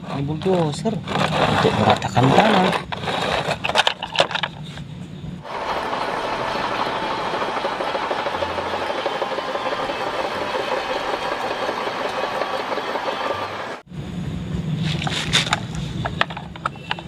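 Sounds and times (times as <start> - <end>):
toy bulldozer plastic clatter: 0.4 - 4.6, 15.0 - 17.0.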